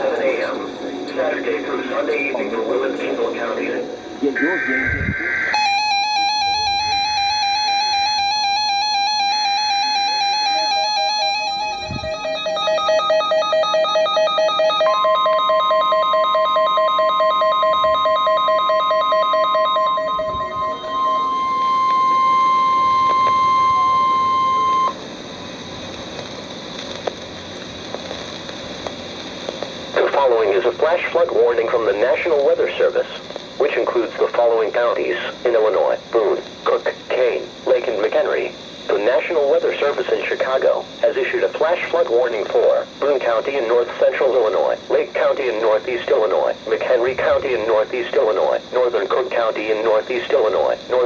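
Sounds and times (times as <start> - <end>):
radio hiss: 0.0 - 15.5, 19.7 - 51.0
steady warning alarm tone: 0.0 - 25.9, 29.8 - 51.0
digital data bursts: 1.1 - 25.0, 33.6 - 51.0
warbling alert tones: 4.3 - 24.9.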